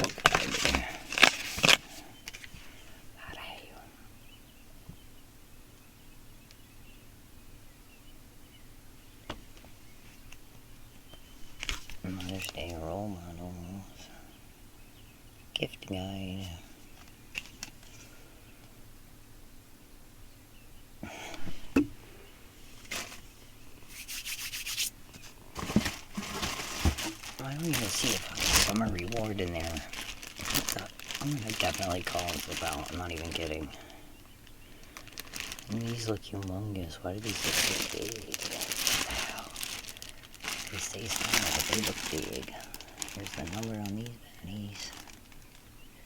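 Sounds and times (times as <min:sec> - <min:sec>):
packaging rustling: 0:00.0 - 0:02.8, 0:11.5 - 0:12.6, 0:22.8 - 0:23.3, 0:23.9 - 0:45.7
low steady hum: 0:00.0 - 0:46.0.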